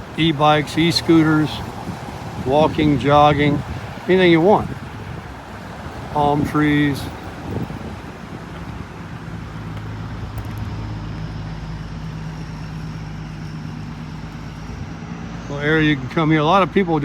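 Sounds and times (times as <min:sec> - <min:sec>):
road traffic noise: 0:00.0 - 0:17.0
vehicle engine low hum: 0:00.0 - 0:17.0.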